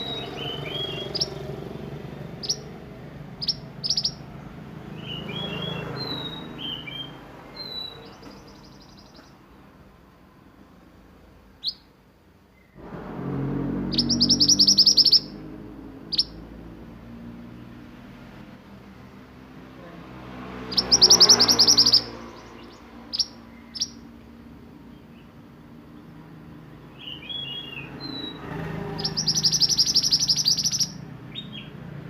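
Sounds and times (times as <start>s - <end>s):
bird chirping high notes: 0.0s - 2.8s, 3.4s - 4.2s, 13.6s - 16.5s, 20.7s - 24.1s, 27.0s - 31.7s
bird rattling trill: 2.4s - 2.7s, 3.4s - 4.2s, 13.9s - 15.4s, 20.7s - 22.2s, 29.0s - 31.0s.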